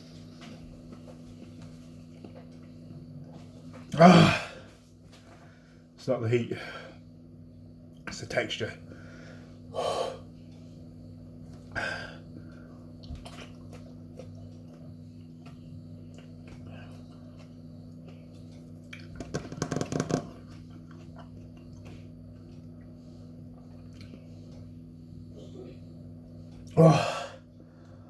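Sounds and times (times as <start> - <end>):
steady low hum: 0.0 - 28.0
person chewing: 20.4 - 24.6.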